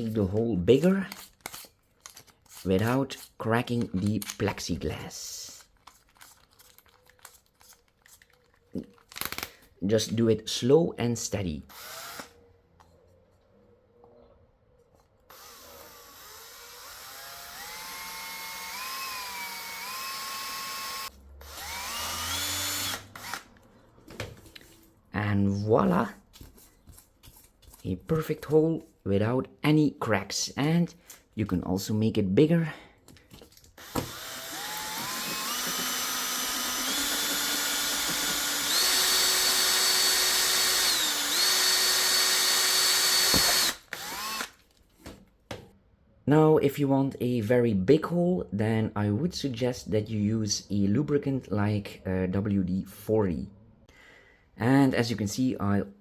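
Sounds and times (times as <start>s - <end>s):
power drill whining: 11.7s - 12.4s, 15.3s - 23.7s, 33.8s - 44.6s.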